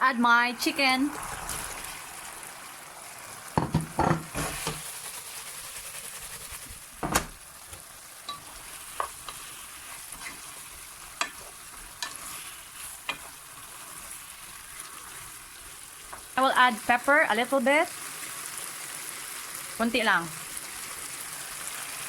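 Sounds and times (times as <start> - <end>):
food sizzling in a pan: 0.0 - 22.0
food thudding into a pan: 3.6 - 4.8, 7.0 - 7.8
spatula knocking on a pan: 3.6 - 4.8.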